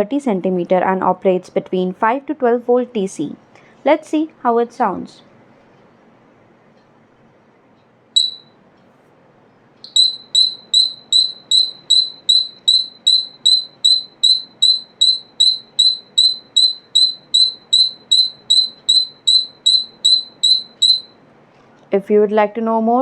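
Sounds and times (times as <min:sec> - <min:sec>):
sharp high-pitched buzzer beeps: 0:08.2 - 0:08.5, 0:09.8 - 0:21.2.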